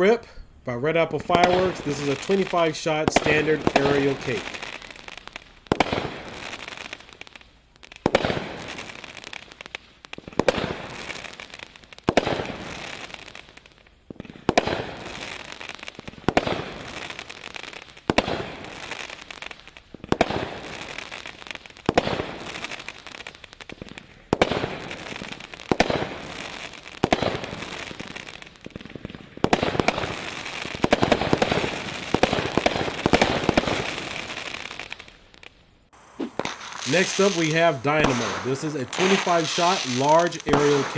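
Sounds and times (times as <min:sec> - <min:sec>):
firework launch reports: 0:00.0 - 0:04.9, 0:36.0 - 0:40.9
firework bursts: 0:01.1 - 0:07.3, 0:29.5 - 0:35.2, 0:35.9 - 0:40.9.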